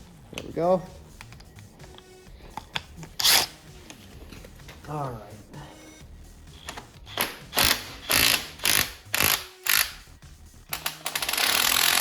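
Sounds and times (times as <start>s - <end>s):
ratchet wrench rasping: 2.6s - 3.6s, 6.6s - 12.0s.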